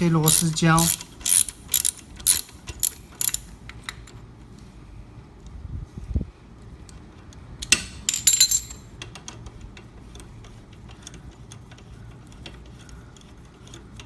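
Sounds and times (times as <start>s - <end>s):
ratchet wrench clicking: 0.0s - 3.5s
metal parts clinking: 0.0s - 4.2s, 7.6s - 8.9s.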